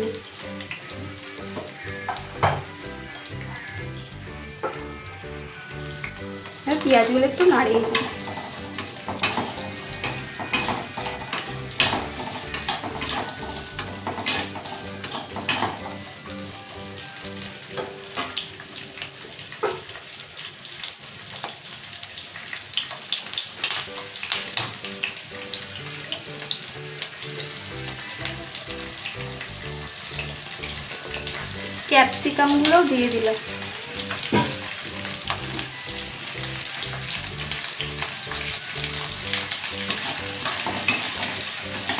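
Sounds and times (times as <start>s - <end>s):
soft background music: 0.0s - 19.8s, 23.6s - 41.9s
onions sizzling in oil: 0.0s - 41.9s
spatula clacking against pan: 7.9s - 16.0s.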